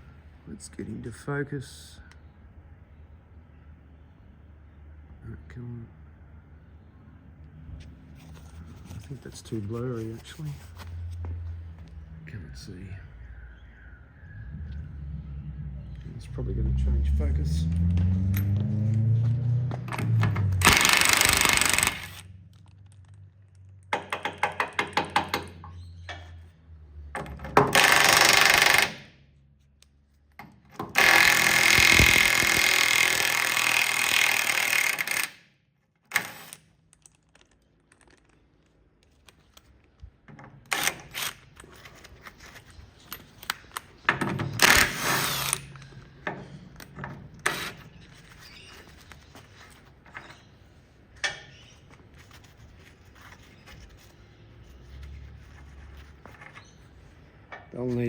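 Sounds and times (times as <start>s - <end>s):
ratchet clicks: 19.9s - 23.2s, 27.7s - 29.1s, 30.9s - 35.4s.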